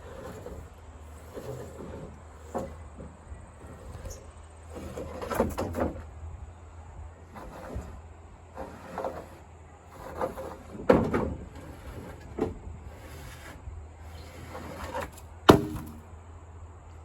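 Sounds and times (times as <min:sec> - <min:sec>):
wooden boards knocking: 0:15.5 - 0:16.0.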